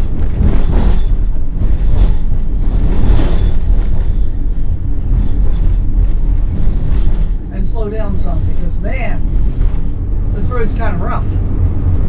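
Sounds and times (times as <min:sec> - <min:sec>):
cabin fittings rattling and creaking: 0:00.0 - 0:07.4, 0:08.1 - 0:10.2
engine and tyres rumbling: 0:00.0 - 0:12.0.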